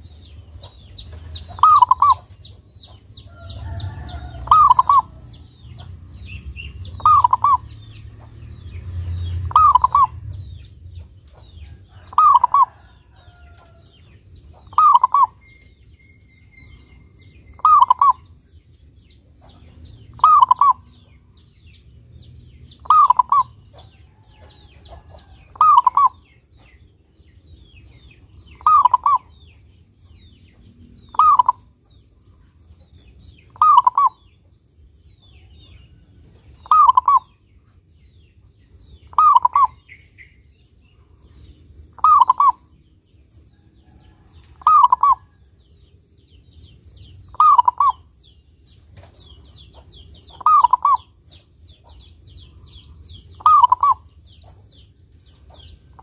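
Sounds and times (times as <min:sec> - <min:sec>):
faint high bird chirps: 0:00.0 - 0:21.9, 0:22.7 - 0:34.5, 0:35.1 - 0:56.0
dove cooing: 0:00.6 - 0:05.5, 0:06.8 - 0:07.7, 0:09.5 - 0:10.3, 0:11.8 - 0:13.4, 0:14.6 - 0:15.5, 0:17.5 - 0:18.3, 0:20.2 - 0:20.9, 0:22.8 - 0:26.2, 0:28.6 - 0:29.4, 0:31.1 - 0:31.6, 0:33.6 - 0:34.2, 0:36.6 - 0:37.3, 0:39.1 - 0:39.9, 0:42.0 - 0:42.6, 0:44.6 - 0:45.3, 0:47.3 - 0:48.1, 0:50.2 - 0:51.2, 0:53.4 - 0:54.1.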